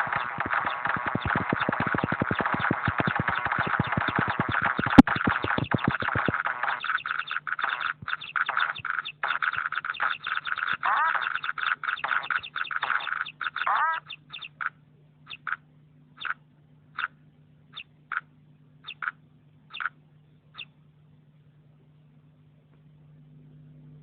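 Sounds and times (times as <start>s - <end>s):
ringtone of high chirps: 0.0s - 14.6s
faint low hum: 0.0s - 24.0s.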